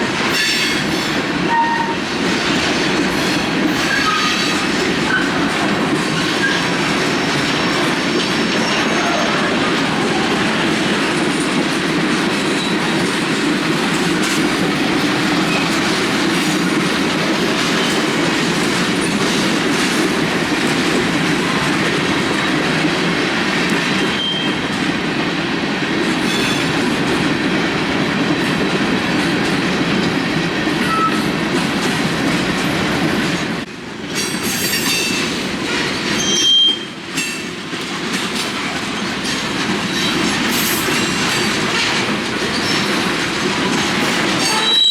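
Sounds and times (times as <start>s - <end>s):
freight train rumbling past: 0.0s - 44.9s
wheels clacking on track: 0.0s - 44.9s
high wheel squeals: 44.4s - 44.9s.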